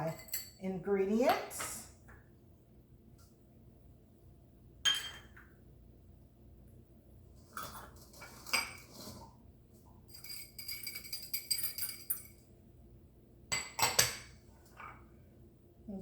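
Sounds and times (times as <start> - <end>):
utensil clinking against bowl: 10.1 - 12.4.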